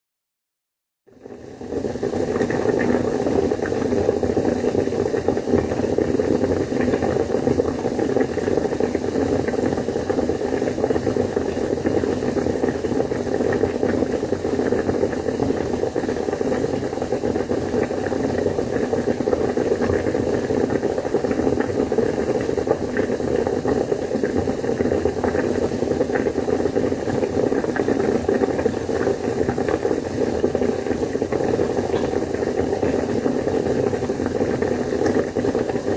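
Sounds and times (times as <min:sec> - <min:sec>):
water boiling in a pot: 0:01.1 - 0:35.9.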